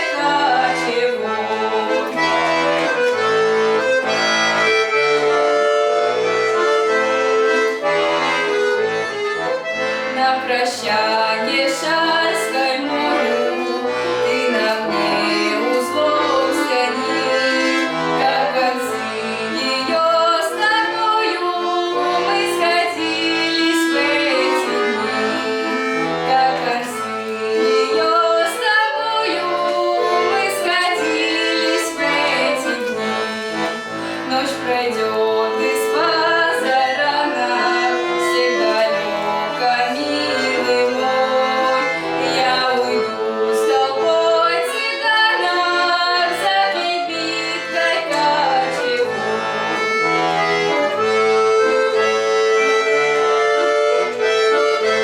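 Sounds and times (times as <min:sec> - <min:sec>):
accordion melody over chords: 0:00.0 - 0:55.0.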